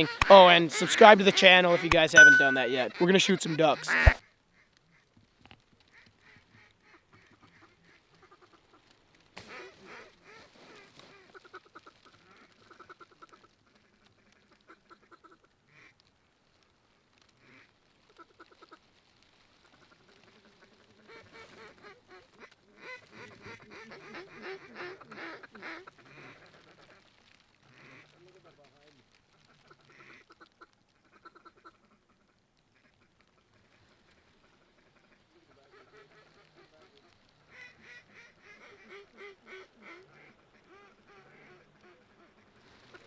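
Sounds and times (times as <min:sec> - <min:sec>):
duck feed chatter: 0:00.0 - 0:04.2
ducks quacking: 0:03.7 - 0:04.2.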